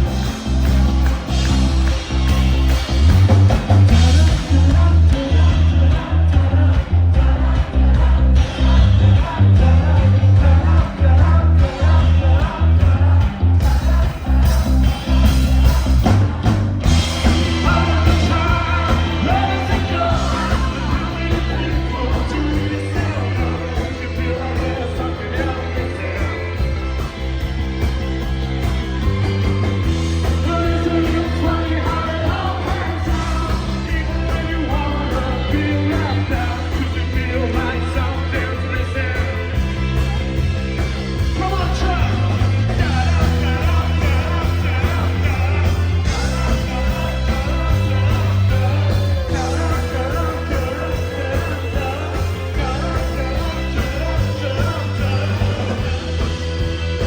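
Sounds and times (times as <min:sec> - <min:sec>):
live rock band playing: 0:00.0 - 0:57.0
person singing: 0:03.8 - 0:27.1, 0:41.3 - 0:56.5.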